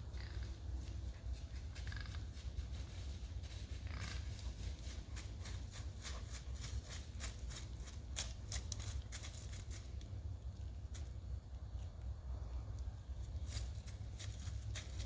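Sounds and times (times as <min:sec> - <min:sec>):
deer clicking: 0:00.1 - 0:15.0.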